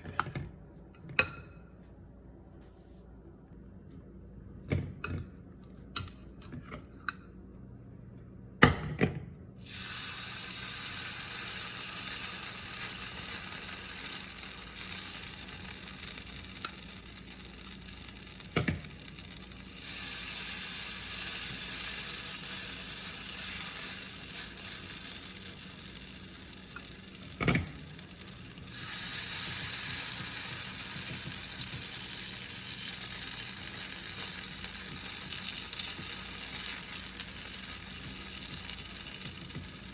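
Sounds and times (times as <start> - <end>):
pancake sizzling in oil: 9.6 - 39.9.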